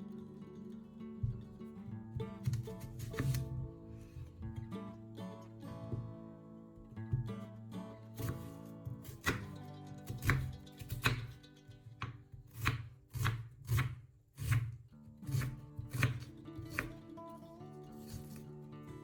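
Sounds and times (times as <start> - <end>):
soft background music: 0.0 - 13.2
knife chopping on cutting board: 2.4 - 4.2, 8.2 - 11.4, 12.0 - 17.0, 17.9 - 18.4.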